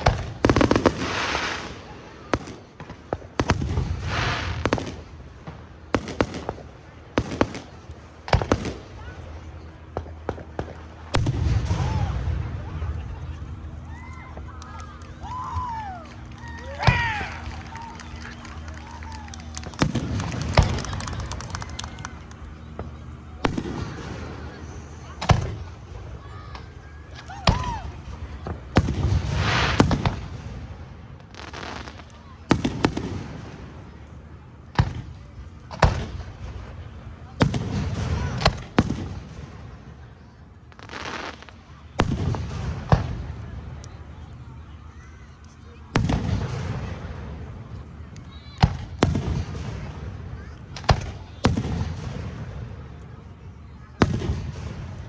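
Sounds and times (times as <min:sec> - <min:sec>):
fireworks bangs: 0:00.0 - 0:09.2, 0:09.8 - 0:13.7, 0:16.6 - 0:26.8, 0:27.4 - 0:43.6, 0:45.9 - 0:47.5, 0:48.5 - 0:52.9, 0:53.7 - 0:55.0
rushing crackling hiss: 0:00.4 - 0:01.8
rising firework hiss: 0:00.4 - 0:02.0, 0:03.4 - 0:05.2, 0:28.8 - 0:32.2, 0:40.7 - 0:41.6.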